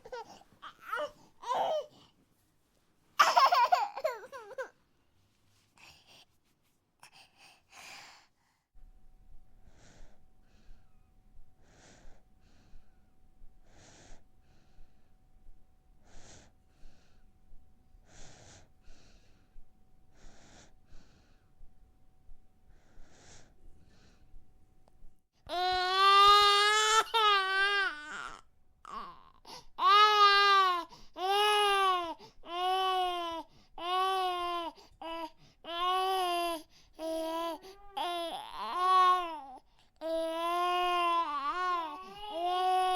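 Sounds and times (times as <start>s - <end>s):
faint steady hum: 0.0s - 42.9s
baby breathing softly: 5.5s - 8.8s, 9.5s - 15.2s, 16.0s - 21.8s, 22.6s - 24.4s, 28.9s - 29.9s, 30.6s - 32.5s, 33.2s - 42.9s.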